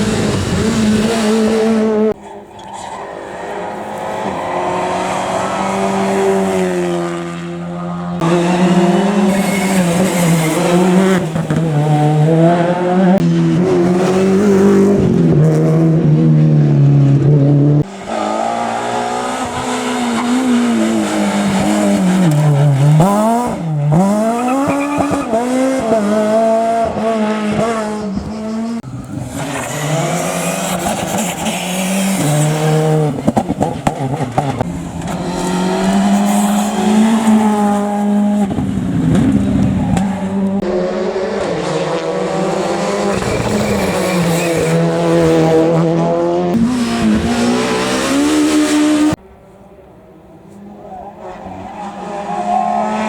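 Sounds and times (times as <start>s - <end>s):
rally car engines revving: 0.0s - 53.0s
tyre squeal: 24.2s - 25.4s.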